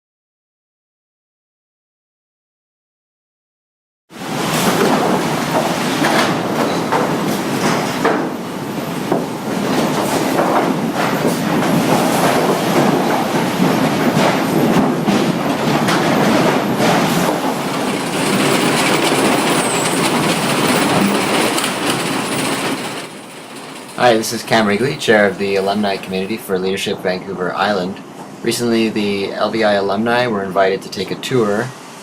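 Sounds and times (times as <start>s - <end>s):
sawmill machinery clattering: 8.9s - 26.6s.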